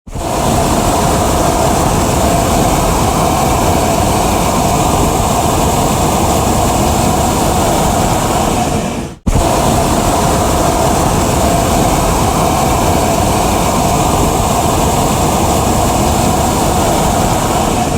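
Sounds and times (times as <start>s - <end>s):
propane burner blast: 0.1s - 17.9s.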